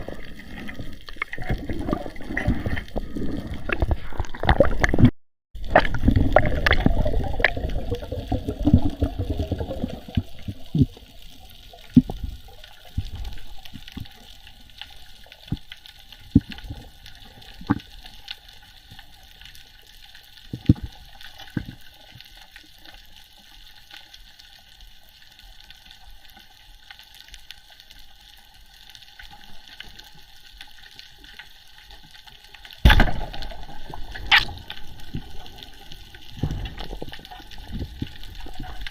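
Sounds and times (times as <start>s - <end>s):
steady water hiss: 0.0s - 5.0s, 5.6s - 38.9s
rush of water: 0.0s - 14.3s
water sloshing and bubbling: 0.0s - 38.9s.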